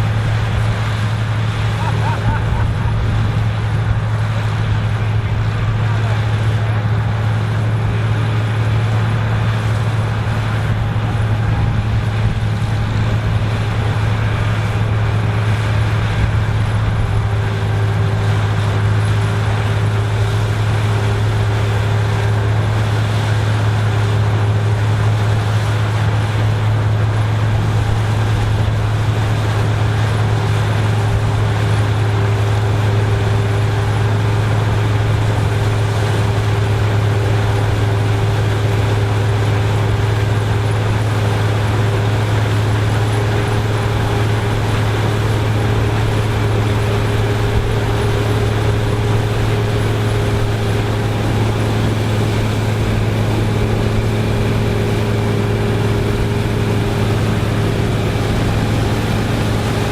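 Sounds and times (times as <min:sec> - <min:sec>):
engine droning steadily: 0:00.0 - 0:59.9.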